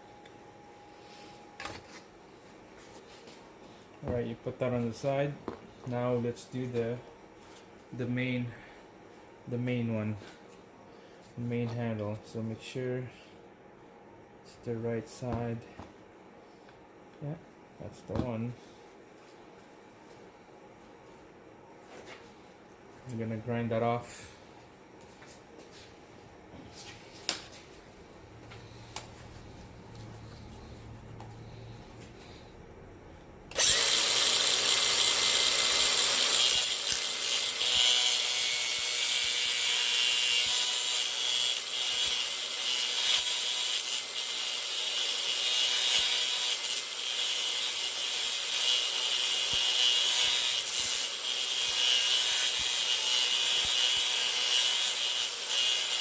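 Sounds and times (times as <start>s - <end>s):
grinder cutting metal: 33.5s - 56.0s.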